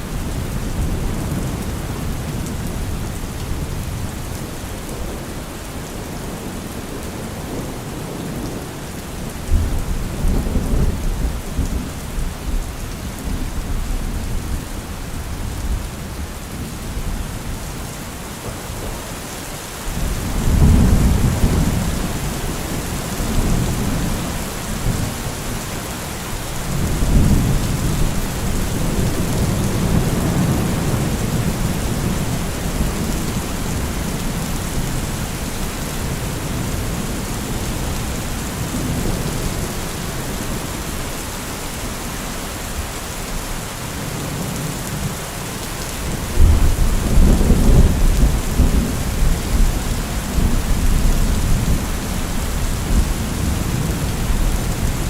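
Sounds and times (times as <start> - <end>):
heavy rain: 0.0 - 55.0
rolling thunder: 20.0 - 25.2.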